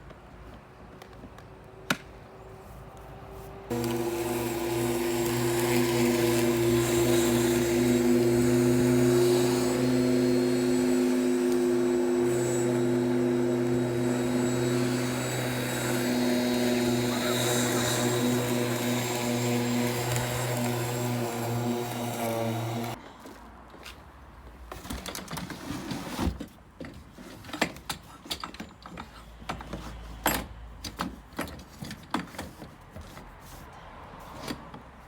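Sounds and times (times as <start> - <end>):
electric lawn mower running: 3.7 - 23.0.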